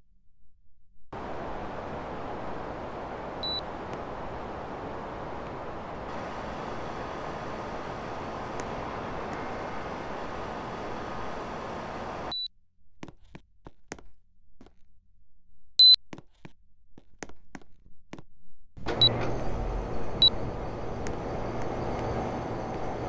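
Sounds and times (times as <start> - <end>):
air conditioner fan running: 1.2 - 12.3, 18.8 - 23.0
faint clicks: 1.2 - 12.3
short high beep: 3.4 - 3.7.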